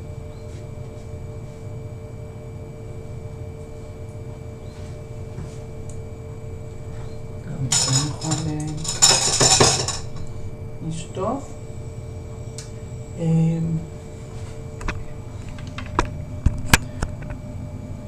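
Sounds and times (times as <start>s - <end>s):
pots and dishes clattering: 7.7s - 10.3s.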